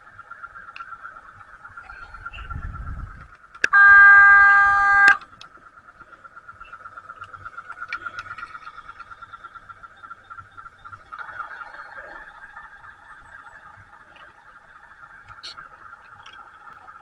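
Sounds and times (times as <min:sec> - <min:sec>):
model locomotive horn toot: 0:03.6 - 0:05.2
fast-pulsing hum: 0:03.7 - 0:05.2.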